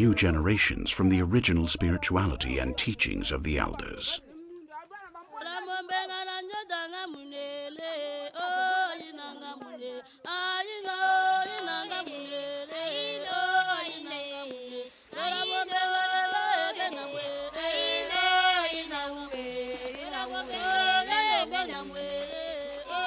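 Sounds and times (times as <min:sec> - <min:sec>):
voices singing yodel-like chant: 0:07.8 - 0:23.0.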